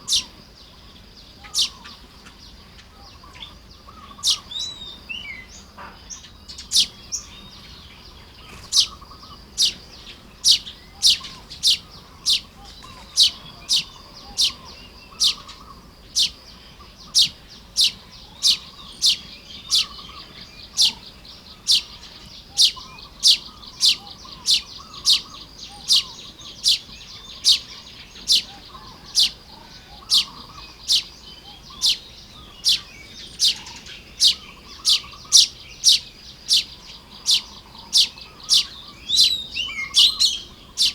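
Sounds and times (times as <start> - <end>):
birds chattering softly: 0.0 - 40.9
bird sharp high chirp: 8.4 - 16.4, 17.0 - 21.0, 21.6 - 40.9.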